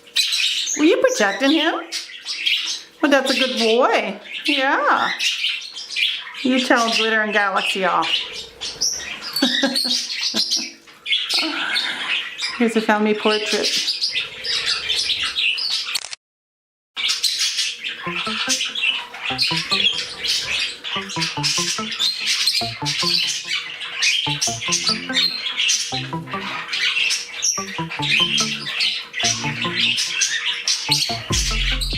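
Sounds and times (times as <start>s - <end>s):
background music with beat: 18.1s - 27.0s, 27.6s - 31.9s.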